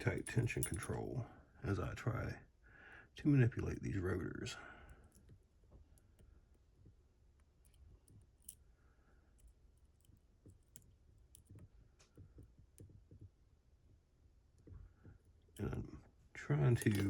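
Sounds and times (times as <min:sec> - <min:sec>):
lock picks clicking and scraping: 0:07.4 - 0:08.7, 0:09.3 - 0:12.9, 0:16.8 - 0:17.0.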